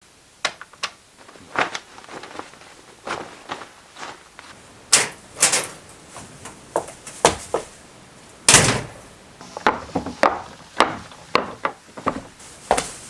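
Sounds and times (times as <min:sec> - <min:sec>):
sharp knocks and clacks: 0:09.6 - 0:12.9.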